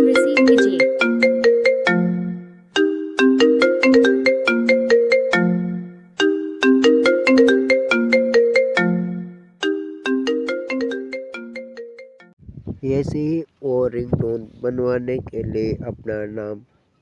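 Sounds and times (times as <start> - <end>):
phone ringtone melody: 0.0 - 12.4.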